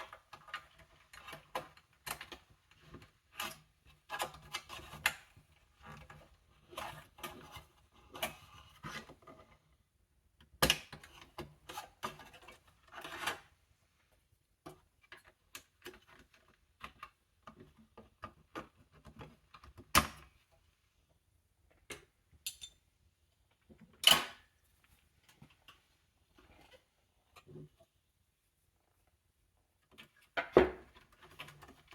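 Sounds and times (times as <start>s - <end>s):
clicks taps and rustles of handling: 14.6s - 20.8s.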